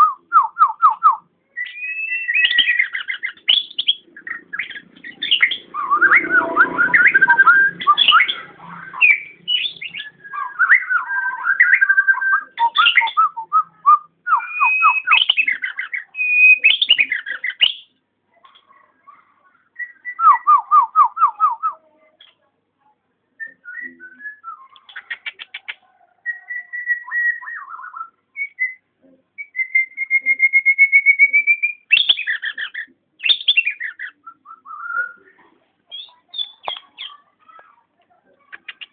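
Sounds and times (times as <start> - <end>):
myna whistling and calling: 1.6 - 17.8.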